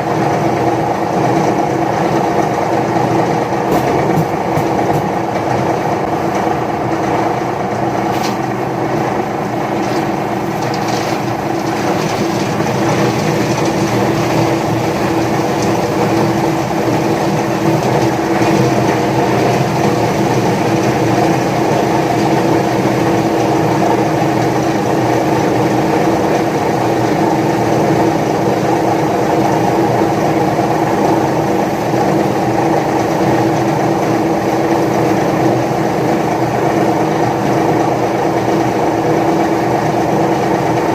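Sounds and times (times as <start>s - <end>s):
paper shredder motor humming: 7.7s - 37.9s.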